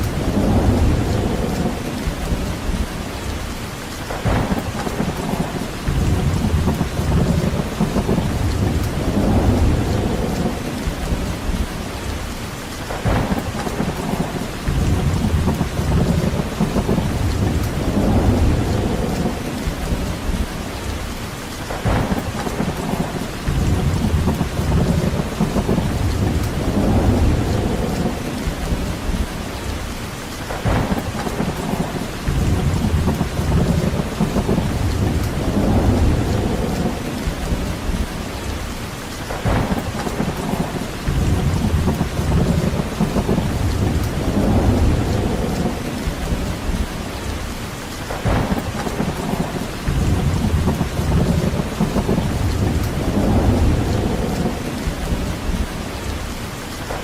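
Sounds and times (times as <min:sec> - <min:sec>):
heavy rain: 0:00.0 - 0:57.0
low rumbling swells: 0:04.2 - 0:12.1, 0:21.8 - 0:29.7, 0:30.6 - 0:38.6, 0:39.4 - 0:47.4, 0:48.2 - 0:56.2.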